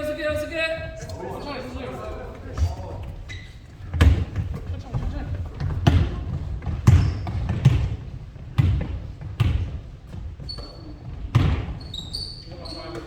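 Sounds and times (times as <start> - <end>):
basketballs bouncing on gym floor: 3.8 - 13.0.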